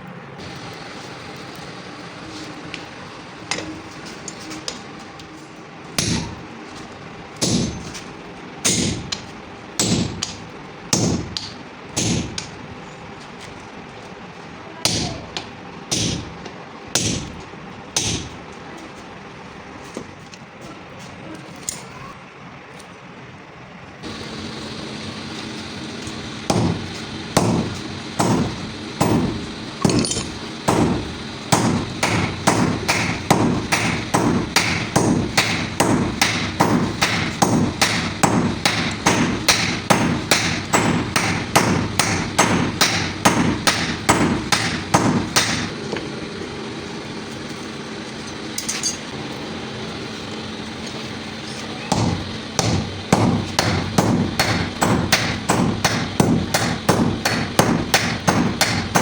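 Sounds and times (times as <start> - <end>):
steady hum: 0.0 - 21.4, 22.0 - 59.0
hammer striking steel: 3.5 - 4.8, 6.0 - 6.4, 7.4 - 8.0, 8.6 - 12.6, 14.8 - 17.4, 18.0 - 18.4, 26.4 - 46.0, 51.5 - 59.0.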